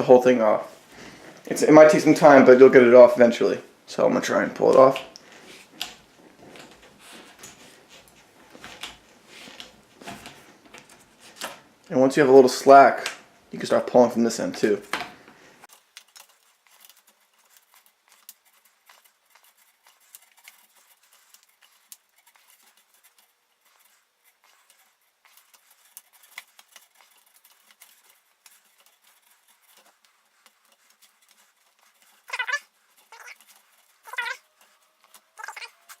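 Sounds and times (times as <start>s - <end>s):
foam squeaking on metal bar: 31.8s - 36.0s.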